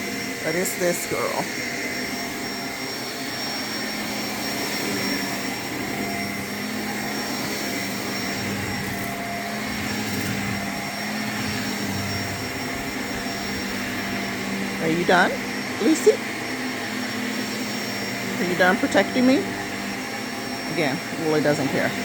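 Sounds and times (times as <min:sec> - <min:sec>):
vacuum cleaner running: 0:00.0 - 0:22.0.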